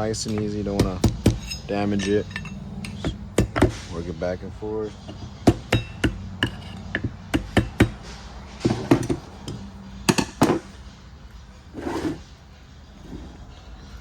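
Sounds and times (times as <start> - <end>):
metal parts clicking and knocking: 0.2 - 3.8, 8.6 - 10.7
soft scrape: 11.7 - 13.6.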